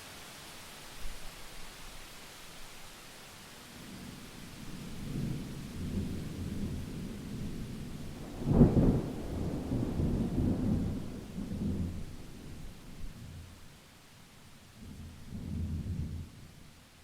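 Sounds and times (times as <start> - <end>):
thunder rumbling: 3.9 - 13.5, 14.8 - 16.6
sharp thunder crack: 8.1 - 12.0.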